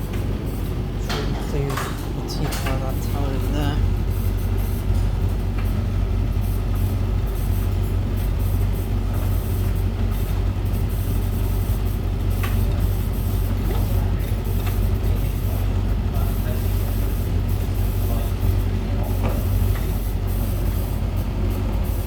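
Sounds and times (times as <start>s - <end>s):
laundry machine running: 0.0s - 22.0s.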